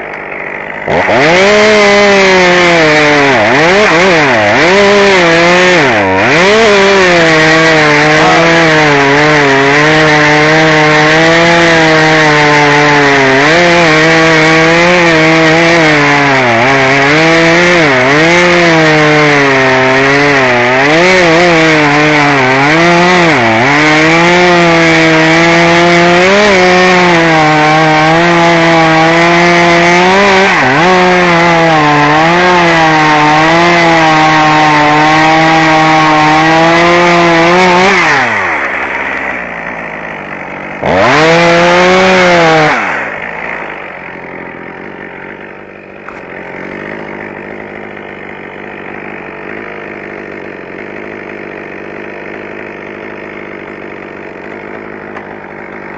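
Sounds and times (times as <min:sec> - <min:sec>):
chainsaw cutting wood: 0:00.0 - 0:55.9.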